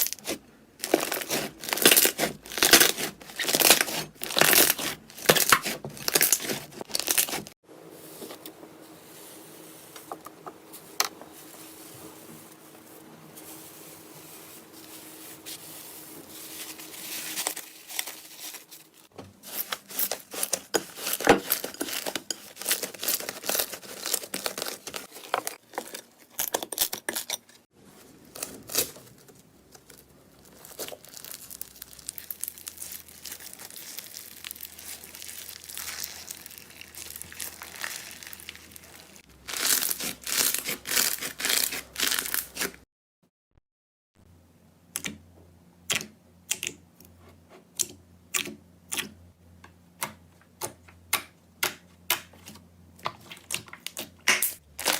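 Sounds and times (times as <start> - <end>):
slime squeezed by hand crackling: 30.5 - 42.7.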